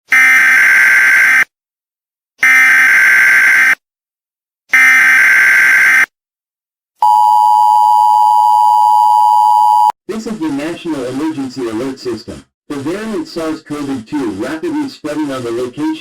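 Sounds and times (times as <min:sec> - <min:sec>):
two-tone attention signal: 0:07.0 - 0:09.9.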